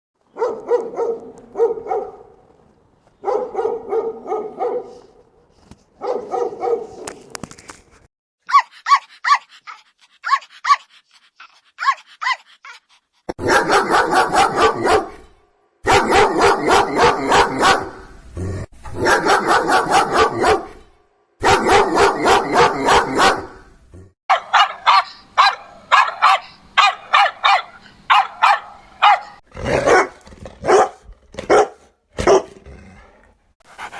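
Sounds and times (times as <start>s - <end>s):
dogs barking: 0.2s - 9.4s, 13.4s - 15.2s, 15.9s - 18.0s, 19.0s - 20.7s, 21.4s - 23.5s, 24.3s - 32.6s.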